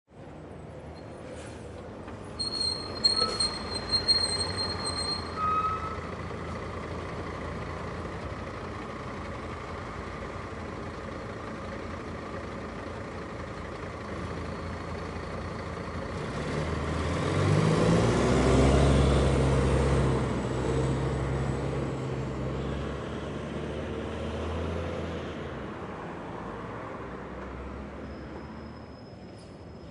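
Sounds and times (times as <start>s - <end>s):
bus engine rumble: 0.1s - 29.9s
bus squeals and knocks: 0.9s - 6.3s, 28.0s - 29.9s.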